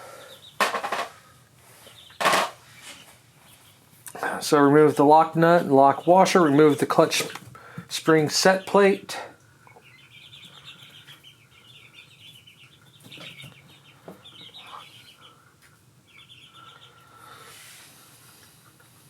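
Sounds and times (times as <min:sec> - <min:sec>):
bird chattering trills: 0:09.7 - 0:15.4.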